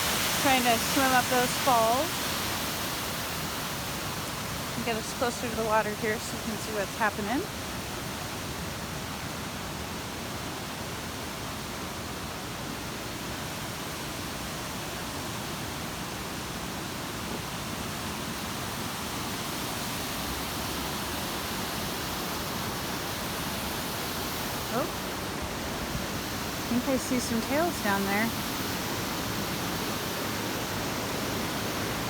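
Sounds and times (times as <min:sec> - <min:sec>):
waterfall rushing: 0:00.0 - 0:08.2, 0:10.1 - 0:32.0.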